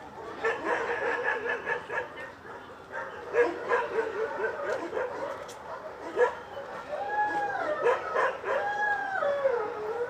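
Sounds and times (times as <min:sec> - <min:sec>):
dog howling whine: 0:08.4 - 0:10.0.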